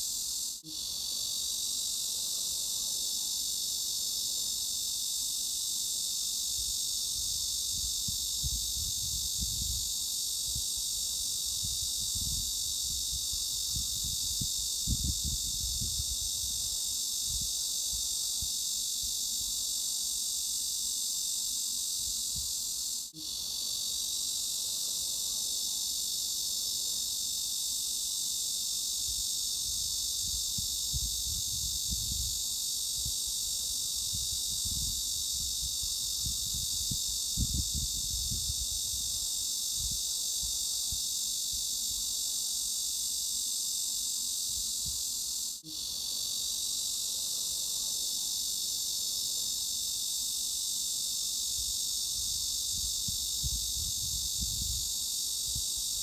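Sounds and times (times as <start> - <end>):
cicadas buzzing: 0.0 - 56.0.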